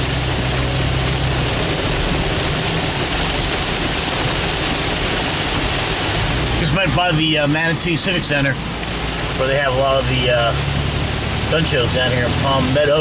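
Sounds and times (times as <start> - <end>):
heavy rain and tyre hiss: 0.0 - 13.0
low engine hum: 0.0 - 13.0.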